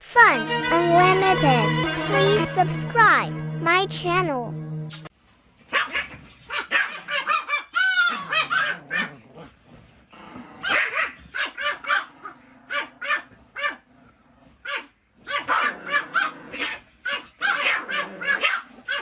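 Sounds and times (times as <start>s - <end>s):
dog yapping: 5.7s - 9.2s, 10.6s - 12.1s, 14.6s - 19.0s.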